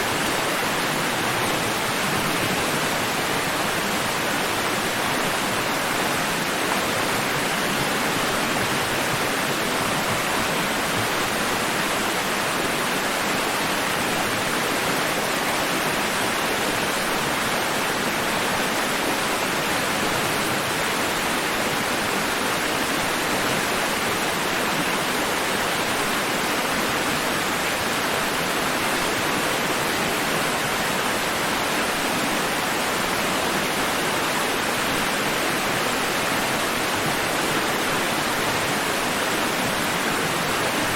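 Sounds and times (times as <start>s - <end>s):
rushing water: 0.0s - 40.9s.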